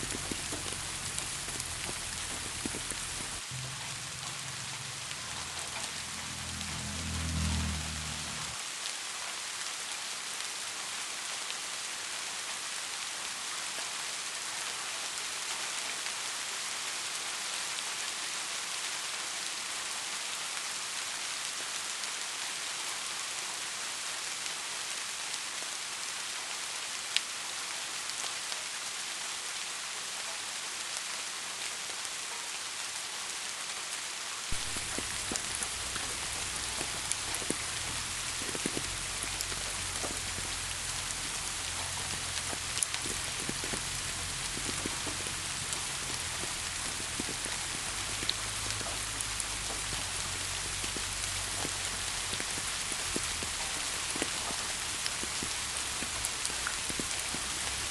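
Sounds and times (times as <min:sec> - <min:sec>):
low rumble: 0:00.0 - 0:08.6
steady rain falling: 0:00.0 - 0:57.9.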